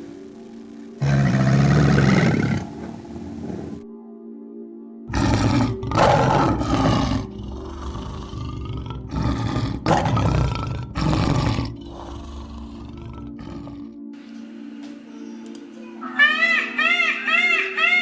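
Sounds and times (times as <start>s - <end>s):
big cat roaring: 1.0s - 2.8s, 5.1s - 14.0s.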